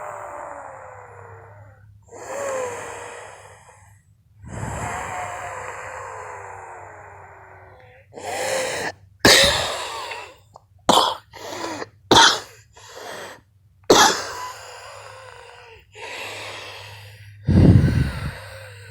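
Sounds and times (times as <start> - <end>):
wheezy breaths: 0.0 - 18.9
person coughing: 8.7 - 14.6.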